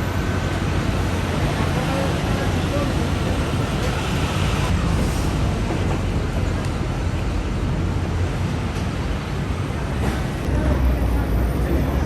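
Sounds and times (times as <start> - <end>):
traffic rumble: 0.0 - 12.0.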